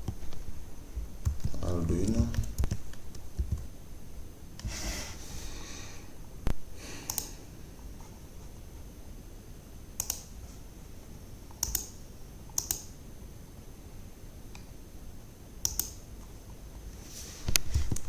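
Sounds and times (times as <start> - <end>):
computer mouse double-clicks: 7.1 - 7.3, 10.0 - 10.3, 11.5 - 12.9, 15.6 - 16.0.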